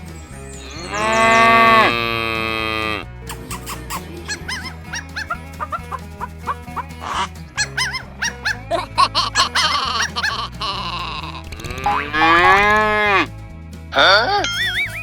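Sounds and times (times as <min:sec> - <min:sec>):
playful background music: 0:00.0 - 0:15.0
cartoon cow moo: 0:00.7 - 0:03.1, 0:11.6 - 0:13.3.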